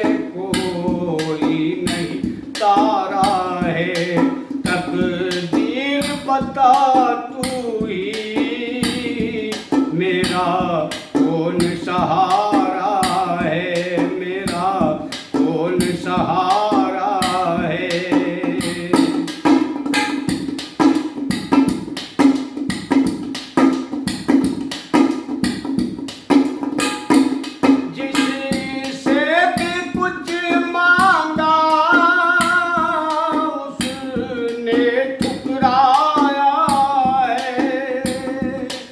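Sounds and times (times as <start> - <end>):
person singing: 0.0 - 19.3, 27.8 - 38.9
steady drum beat: 0.0 - 38.9.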